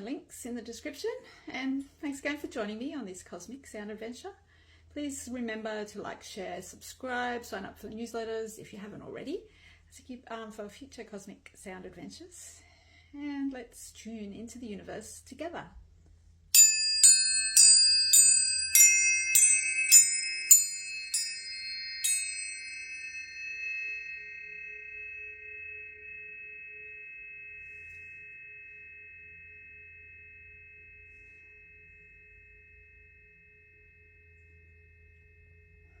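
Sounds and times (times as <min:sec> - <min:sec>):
tuning forks ringing: 0:16.5 - 0:36.0.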